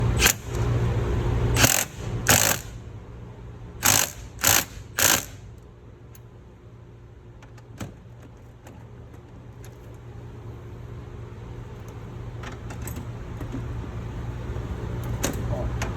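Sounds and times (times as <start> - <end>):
low machinery hum: 0.0 - 15.9
rasping mechanical noises: 1.5 - 2.8, 3.8 - 5.5.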